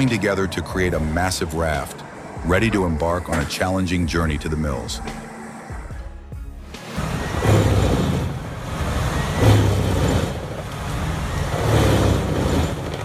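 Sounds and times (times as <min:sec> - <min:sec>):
truck engine rumbling under load: 0:06.8 - 0:13.0.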